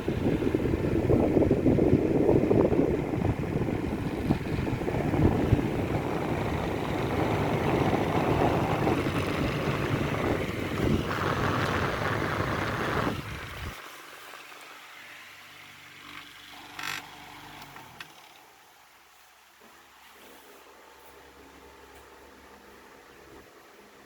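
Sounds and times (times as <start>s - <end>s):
airflow buffeting microphone: 0.0s - 15.3s
fan air rushing: 0.0s - 24.0s.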